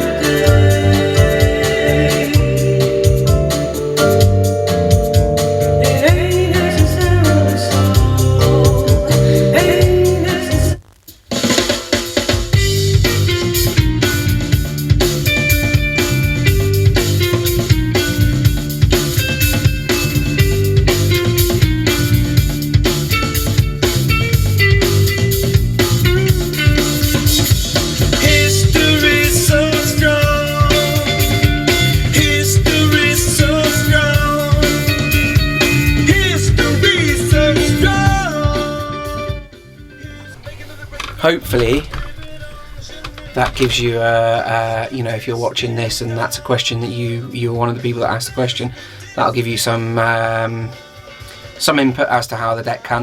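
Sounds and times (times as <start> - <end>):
song with drums and guitar: 0.0 - 46.6, 50.6 - 52.1.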